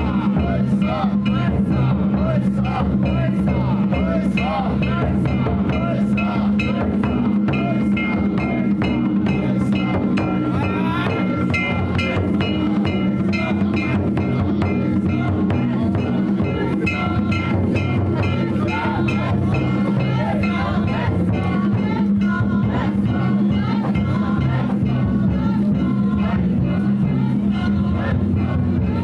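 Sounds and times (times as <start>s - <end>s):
drum beating fast rhythm: 0.0s - 29.0s
gongs ringing: 2.6s - 25.0s.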